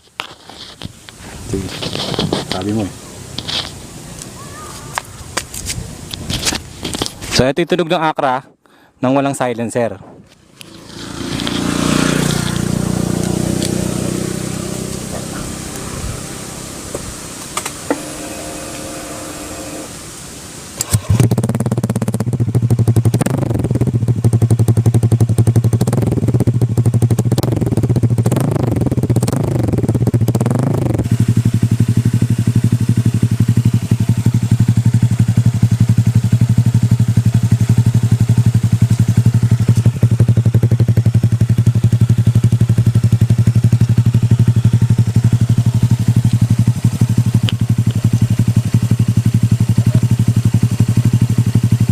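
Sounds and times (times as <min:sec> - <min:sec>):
scooter engine revving and idling: 0:10.4 - 0:51.9.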